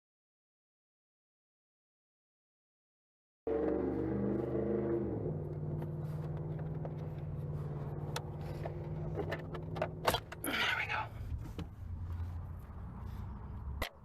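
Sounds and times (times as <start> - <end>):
vehicle engine humming: 3.5 - 14.0.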